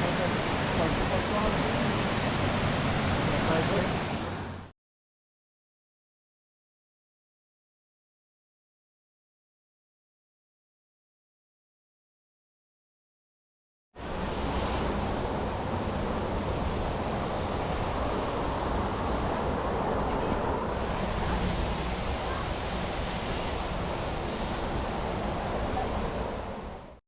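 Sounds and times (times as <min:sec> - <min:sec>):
waterfall roaring: 0:00.0 - 0:04.7, 0:14.0 - 0:27.0.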